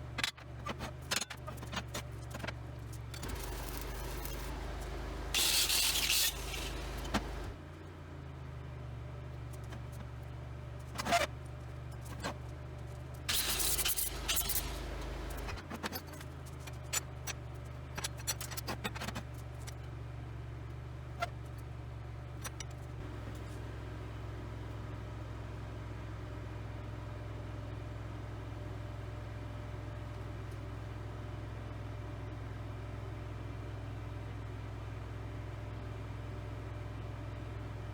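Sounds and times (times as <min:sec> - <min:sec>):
low motor hum: 0:02.7 - 0:07.7, 0:13.2 - 0:15.7.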